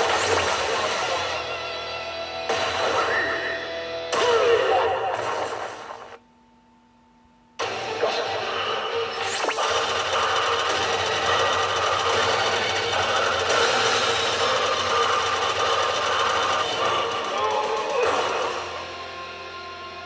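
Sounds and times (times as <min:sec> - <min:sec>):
pachinko machine sound effects: 0:00.0 - 0:01.5, 0:07.6 - 0:18.8.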